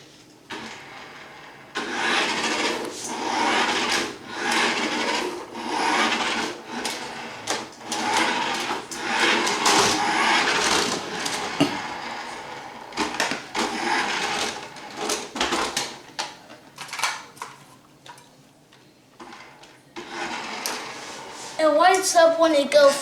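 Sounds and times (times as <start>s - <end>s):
toy car motor whirring: 1.7s - 14.6s, 19.3s - 22.1s.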